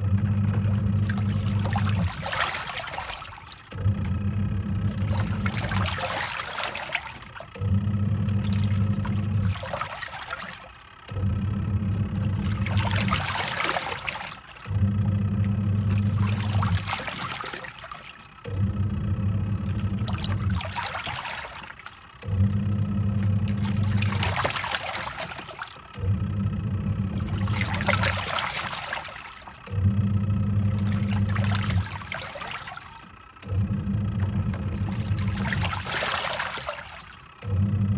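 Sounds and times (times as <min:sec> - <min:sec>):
washing machine motor humming: 0:00.0 - 0:37.9
water and laundry sloshing: 0:00.0 - 0:37.9.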